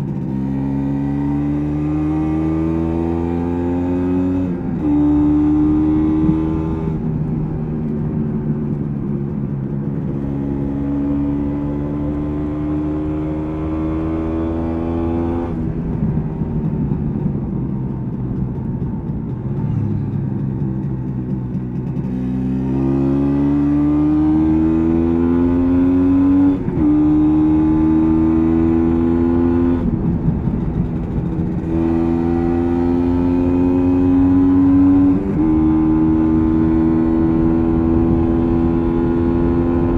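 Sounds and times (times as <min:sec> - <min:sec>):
motorcycle two-stroke engine accelerating: 0:00.0 - 0:39.9.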